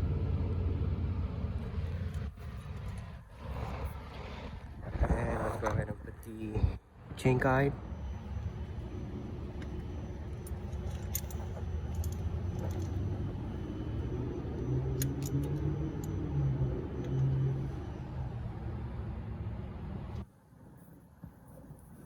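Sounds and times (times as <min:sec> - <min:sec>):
low background rumble: 0:00.0 - 0:20.2
metal tools clinking: 0:09.1 - 0:16.3.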